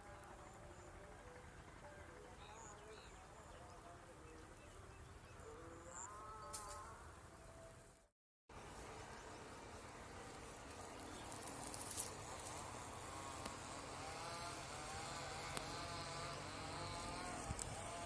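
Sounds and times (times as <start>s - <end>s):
insect buzzing: 10.9s - 18.0s.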